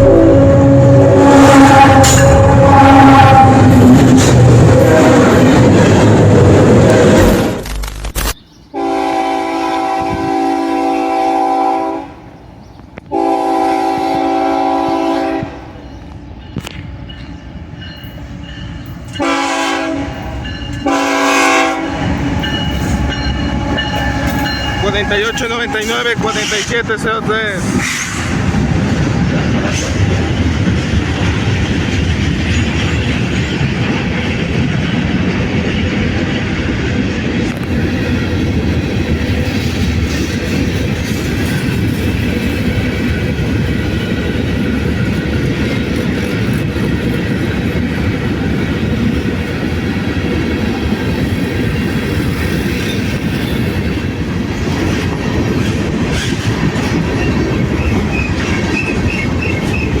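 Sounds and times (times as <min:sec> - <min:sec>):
freight train rumbling past: 0:00.0 - 0:07.7, 0:08.5 - 1:00.0.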